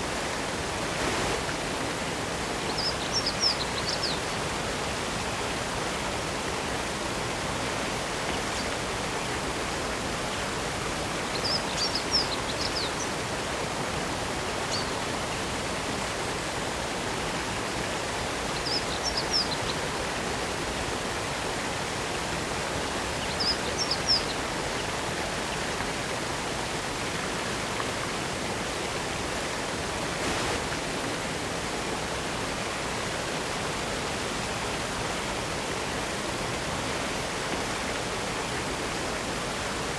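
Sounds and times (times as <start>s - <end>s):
waterfall splashing: 0.0s - 2.9s, 24.4s - 39.9s.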